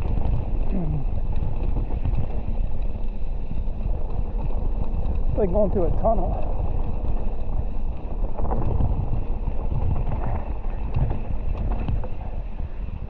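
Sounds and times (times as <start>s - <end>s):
bike tyres rumbling over rocky trail: 0.0s - 13.0s
wind buffeting microphone: 0.0s - 13.0s.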